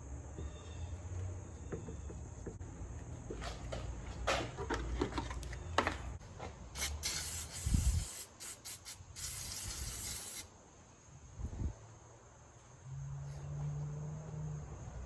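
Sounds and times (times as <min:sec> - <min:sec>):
hissing spray: 0:06.8 - 0:10.5.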